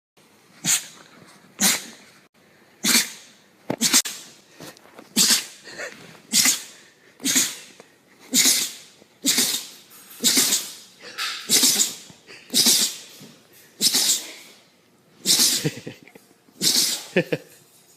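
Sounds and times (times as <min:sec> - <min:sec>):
dog sneezing: 0:00.6 - 0:01.0, 0:01.6 - 0:02.0, 0:02.8 - 0:04.4, 0:05.1 - 0:14.6, 0:15.2 - 0:15.8, 0:16.6 - 0:17.3.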